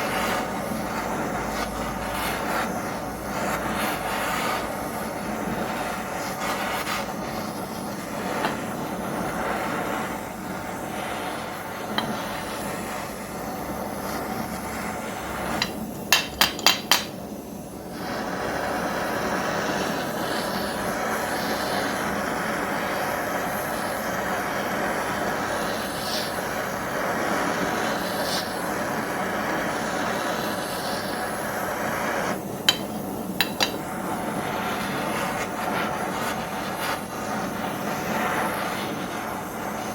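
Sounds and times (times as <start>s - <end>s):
blowtorch flame: 0.0s - 39.9s
sharp metal taps: 15.6s - 17.2s, 32.7s - 33.8s.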